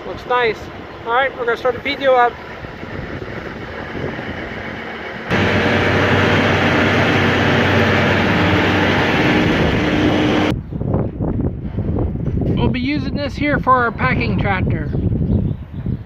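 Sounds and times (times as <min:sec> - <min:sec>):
tractor engine hum: 0:00.7 - 0:10.5
forage box mechanical running: 0:05.3 - 0:10.5.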